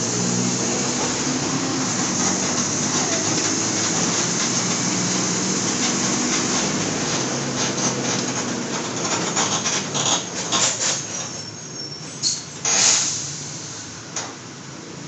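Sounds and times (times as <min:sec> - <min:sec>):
bus diesel engine running: 0:00.0 - 0:15.0
road noise: 0:00.0 - 0:15.0
sharp clicks and knocks: 0:05.6 - 0:11.2.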